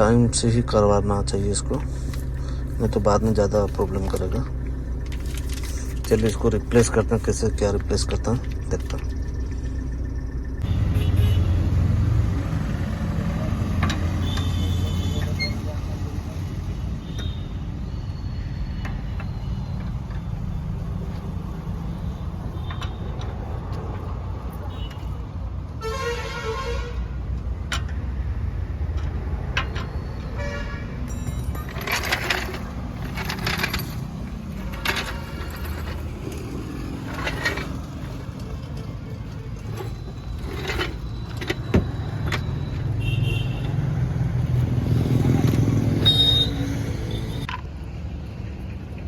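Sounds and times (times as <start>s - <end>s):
hand tools clicking and clinking: 1.6s - 9.3s, 28.8s - 43.0s.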